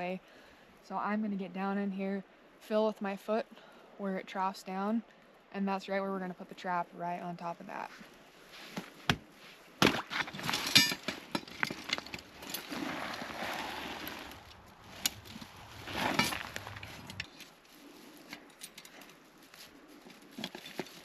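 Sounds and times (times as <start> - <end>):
ice crunching and scraping: 8.5 - 21.0
ice cracking: 9.8 - 17.3.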